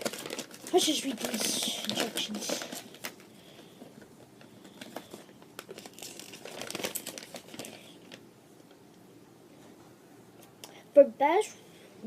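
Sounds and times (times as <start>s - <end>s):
paper crinkling and rustling: 0.0s - 8.2s.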